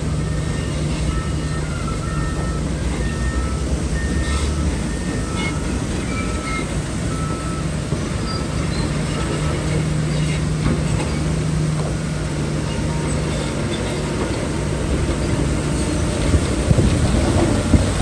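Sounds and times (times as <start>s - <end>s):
diesel machinery engine hum: 0.0s - 18.0s
metal tracks clanking and squeaking: 0.0s - 18.0s.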